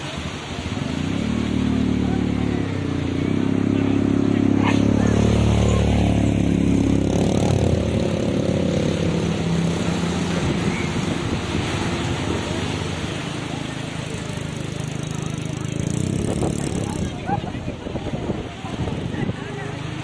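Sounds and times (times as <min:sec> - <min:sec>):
motor engine running: 0:00.5 - 0:20.0.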